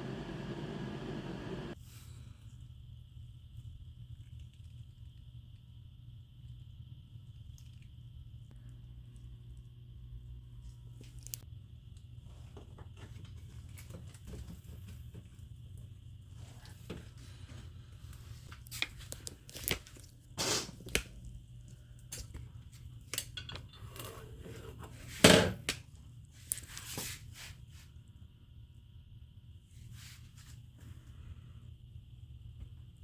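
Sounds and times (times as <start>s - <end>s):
steady low hum: 0.0s - 13.2s.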